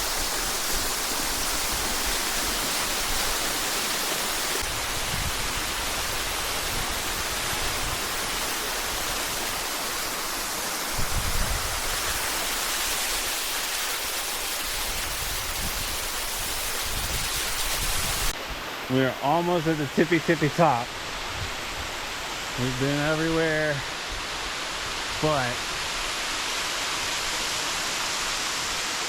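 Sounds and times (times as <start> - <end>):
waterfall rushing: 0.0 - 29.0.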